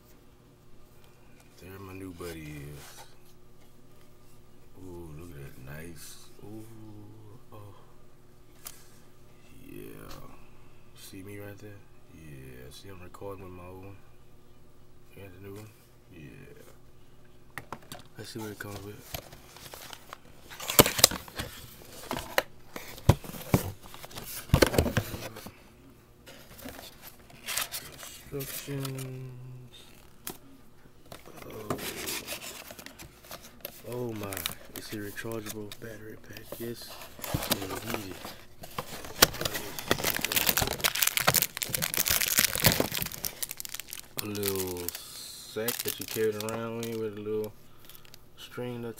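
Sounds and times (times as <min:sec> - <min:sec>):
packaging clicks and rustles: 0:17.7 - 0:25.5, 0:31.1 - 0:48.2.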